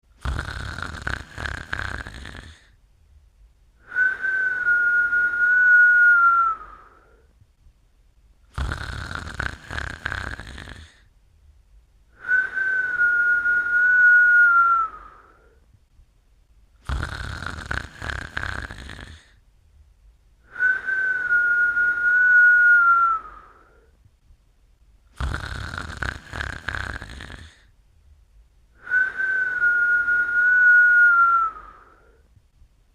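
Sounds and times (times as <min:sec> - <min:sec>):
person snoring: 0:00.1 - 0:02.8, 0:08.5 - 0:11.1, 0:16.8 - 0:19.4, 0:25.1 - 0:27.7
high whistle while sleeping: 0:03.8 - 0:07.2, 0:12.2 - 0:15.4, 0:20.5 - 0:23.8, 0:28.8 - 0:32.2.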